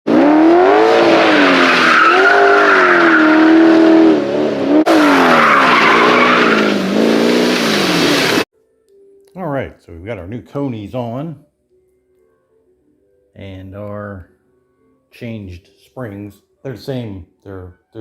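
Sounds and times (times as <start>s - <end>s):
car engine revving high: 0.1s - 8.4s
tires squealing: 0.1s - 8.4s.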